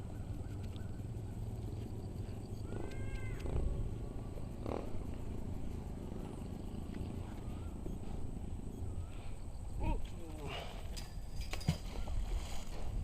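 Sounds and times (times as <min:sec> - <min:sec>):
steady low rumble: 0:00.0 - 0:09.8.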